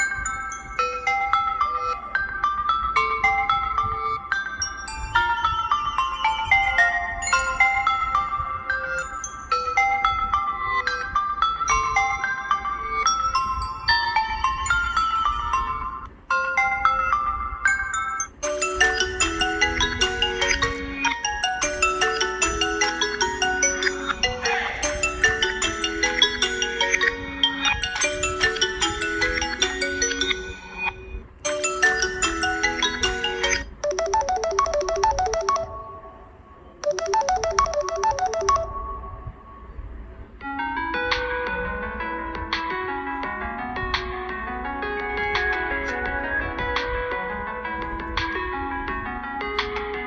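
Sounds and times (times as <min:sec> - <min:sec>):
bell-like ringtone melody: 0:00.0 - 0:39.5.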